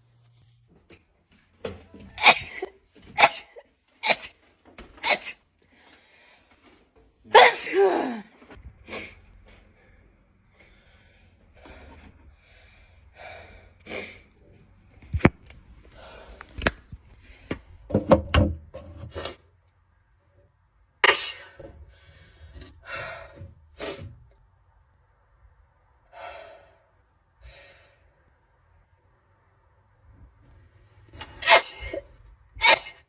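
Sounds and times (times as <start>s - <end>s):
person gasping: 7.4s - 8.2s.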